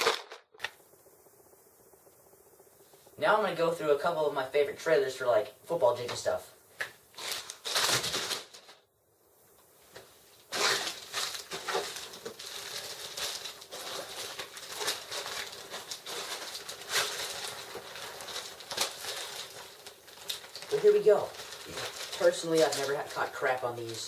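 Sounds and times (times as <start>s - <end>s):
plastic packets crinkling: 0.0s - 0.6s, 7.1s - 8.9s, 9.9s - 24.0s.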